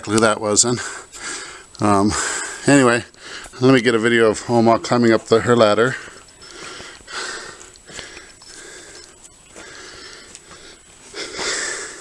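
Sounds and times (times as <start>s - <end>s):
person breathing hard: 0.8s - 3.6s, 6.0s - 12.0s.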